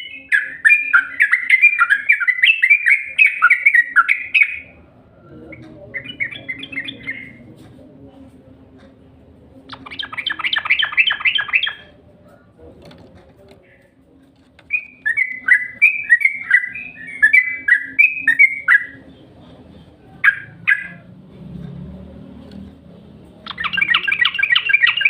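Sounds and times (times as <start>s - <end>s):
bird song: 0.0s - 7.5s, 9.6s - 12.0s, 14.6s - 21.2s, 23.4s - 25.0s.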